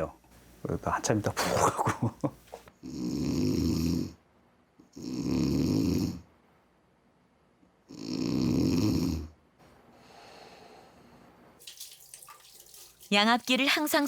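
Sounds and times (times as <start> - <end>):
man snoring: 2.8 - 4.2, 4.9 - 6.3, 7.9 - 9.4.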